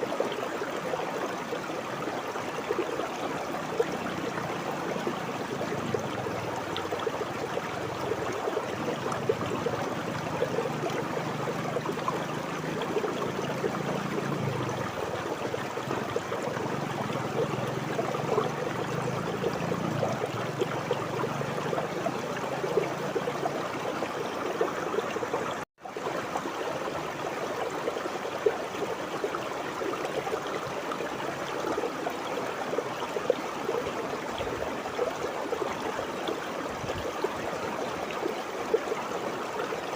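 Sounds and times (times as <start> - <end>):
river water babbling over stones: 0.0 - 39.9.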